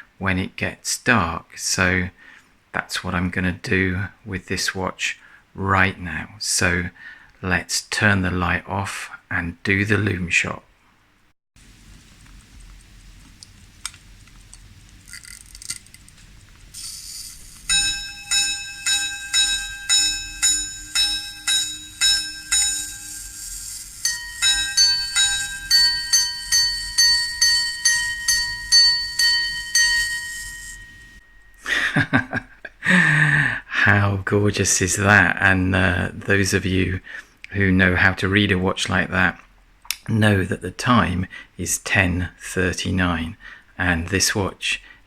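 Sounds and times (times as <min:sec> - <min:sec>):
pocket watch mechanism clicks: 0:15.1 - 0:16.2
ding-dong gong strikes: 0:17.7 - 0:23.4, 0:24.0 - 0:31.6
high watch gong strikes: 0:17.7 - 0:31.6.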